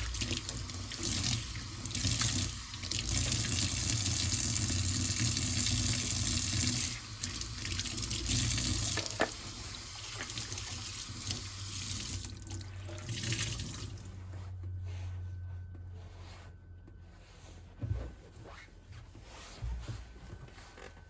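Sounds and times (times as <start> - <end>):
tap water running into sink: 0.0 - 14.0.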